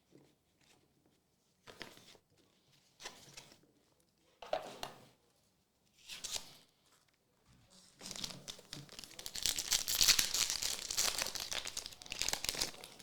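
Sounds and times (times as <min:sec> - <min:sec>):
wrapper tearing and crinkling: 0:08.0 - 0:13.0.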